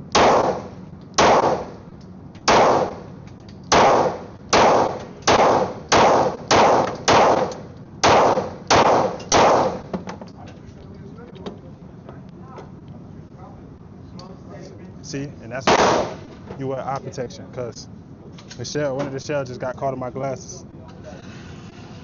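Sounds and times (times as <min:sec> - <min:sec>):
pistol shots echoing: 0:00.1 - 0:01.8, 0:02.5 - 0:03.0, 0:03.7 - 0:09.9, 0:15.7 - 0:16.2.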